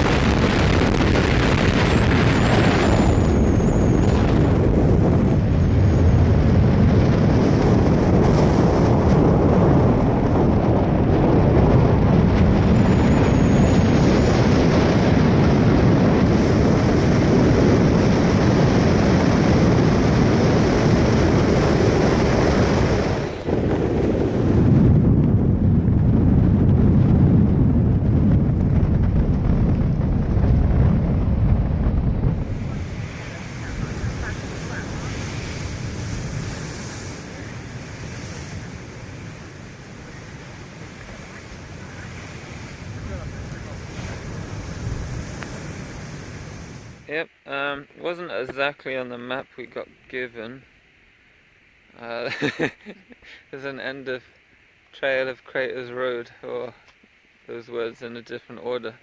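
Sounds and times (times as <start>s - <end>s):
wind buffeting microphone: 0.0s - 47.1s
car road noise: 27.7s - 47.0s.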